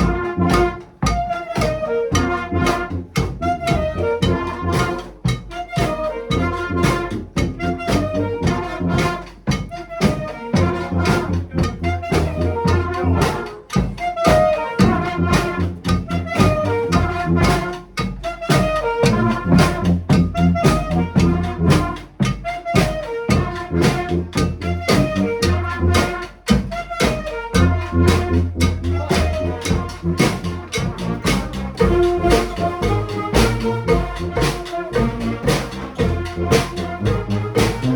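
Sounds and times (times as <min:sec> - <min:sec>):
brass band horns: 0:00.0 - 0:37.9
steady drum beat: 0:00.0 - 0:37.9
low bass line: 0:27.6 - 0:37.9.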